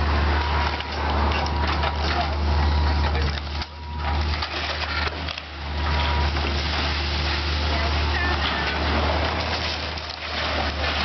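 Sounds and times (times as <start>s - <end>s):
low engine rumble: 0.0s - 11.0s
wood and debris being crushed: 0.1s - 11.0s.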